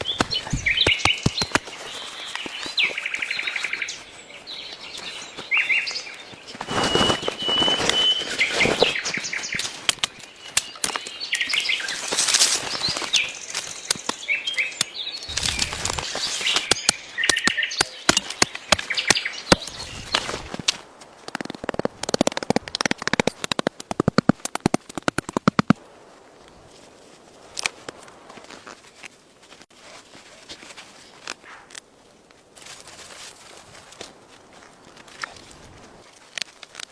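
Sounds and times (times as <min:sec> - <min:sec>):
birds chirping: 0:00.0 - 0:20.7
sharp clicks and crackles: 0:09.5 - 0:25.8.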